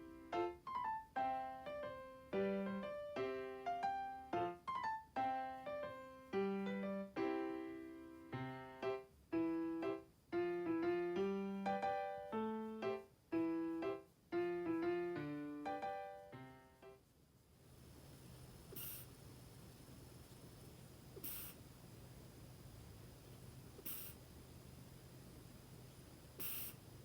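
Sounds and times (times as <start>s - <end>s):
gentle solo piano melody: 0.0s - 16.9s.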